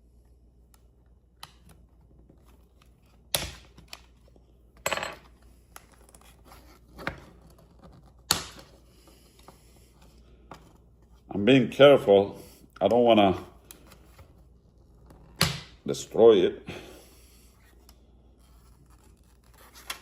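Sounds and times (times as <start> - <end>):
small clicks and scrapes: 5.7 - 11.2.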